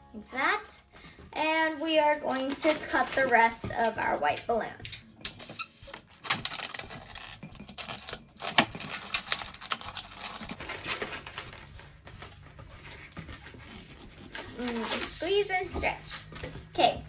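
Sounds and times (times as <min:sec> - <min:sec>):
balloons squeaking and rubbing: 0:05.4 - 0:17.0.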